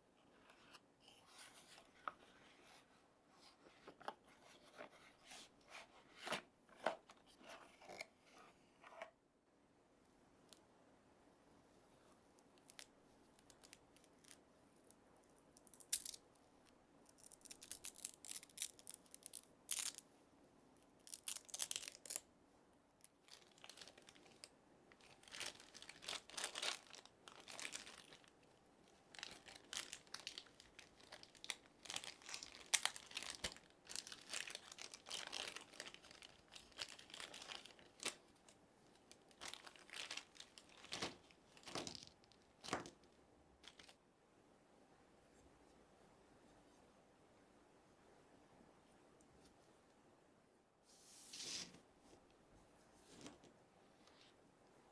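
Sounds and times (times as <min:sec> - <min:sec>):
packaging crinkling and tearing: 0:15.6 - 0:16.2, 0:17.2 - 0:20.0, 0:21.0 - 0:22.2, 0:23.2 - 0:43.0, 0:43.6 - 0:44.0.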